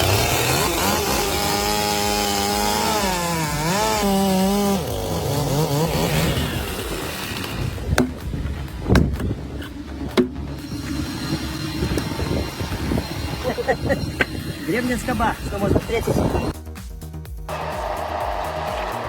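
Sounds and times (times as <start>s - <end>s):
chainsaw running at high revs: 0.0s - 8.8s, 10.2s - 16.6s
sharp knock: 8.0s - 8.2s.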